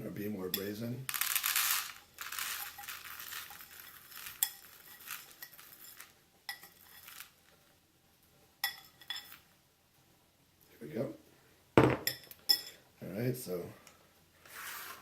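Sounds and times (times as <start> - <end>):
coffee beans pouring and rattling: 1.1 - 7.5.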